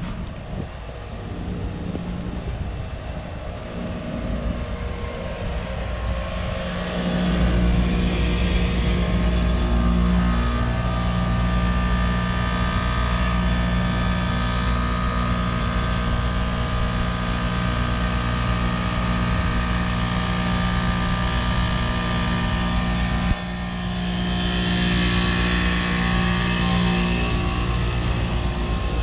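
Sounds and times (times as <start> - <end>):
compressor hum: 0.0 - 29.0
steady tones: 0.0 - 29.0.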